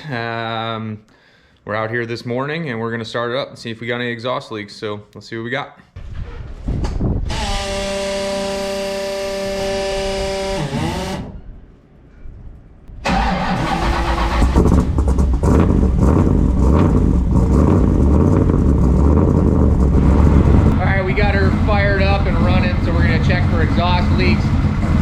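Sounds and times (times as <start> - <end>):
car engine rumbling: 6.0 - 11.7, 13.0 - 25.0
starter motor whining: 7.2 - 11.4, 13.1 - 15.4.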